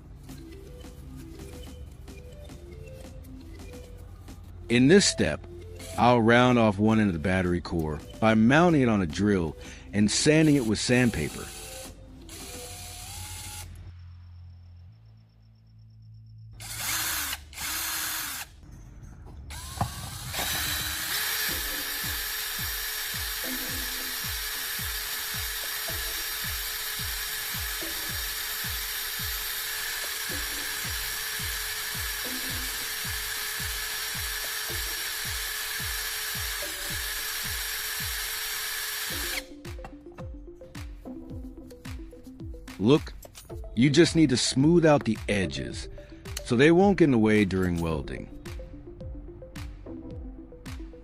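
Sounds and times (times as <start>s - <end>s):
electric drill grinding on sandpaper: 10.2s - 13.8s, 16.6s - 18.6s, 19.5s - 39.5s.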